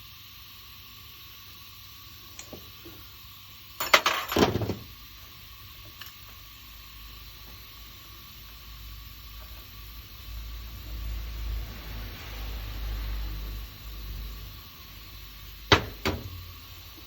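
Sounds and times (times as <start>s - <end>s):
metal objects clinking: 3.8s - 4.6s.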